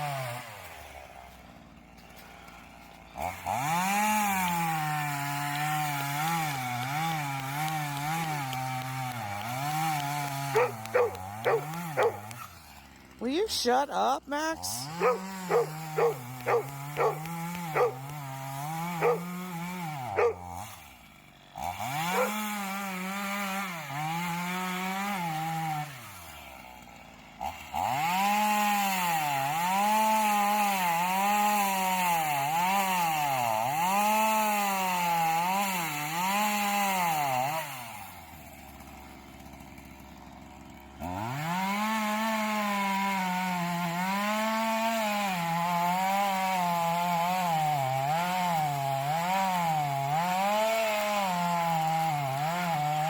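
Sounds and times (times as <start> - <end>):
chainsaw cutting wood: 0.0 - 53.0
dog barking: 10.5 - 12.4, 14.8 - 18.2, 19.0 - 19.4, 20.1 - 20.5, 21.9 - 22.4.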